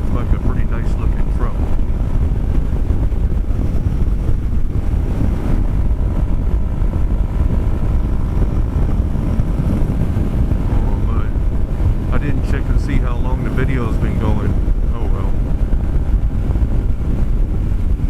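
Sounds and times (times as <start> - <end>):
road noise: 0.0 - 18.0
wind buffeting microphone: 0.0 - 18.0
scooter engine: 1.7 - 12.1.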